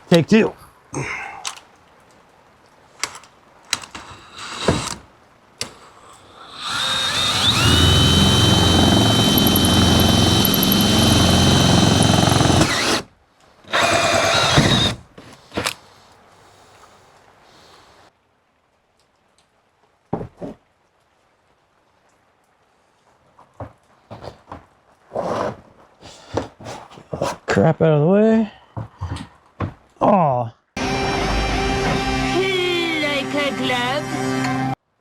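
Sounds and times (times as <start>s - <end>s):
power drill with hole saw whining: 4.0s - 5.0s, 6.2s - 13.0s, 13.7s - 15.0s.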